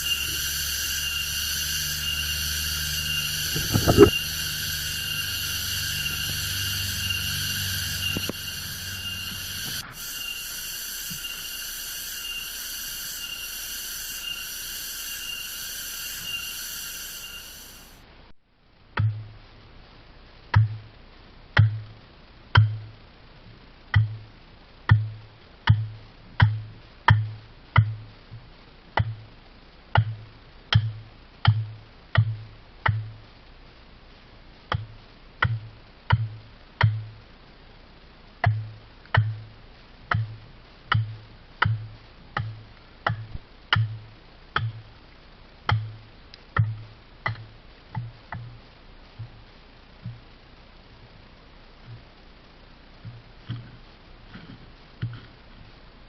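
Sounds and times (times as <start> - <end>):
pulsing insect drone: 0.0 - 18.0.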